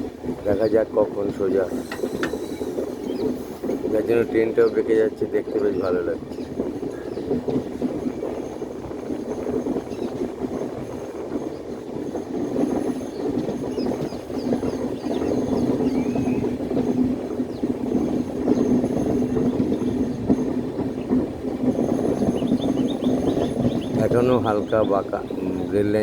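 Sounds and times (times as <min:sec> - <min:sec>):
train wheels rumbling on rails: 0:00.0 - 0:26.0.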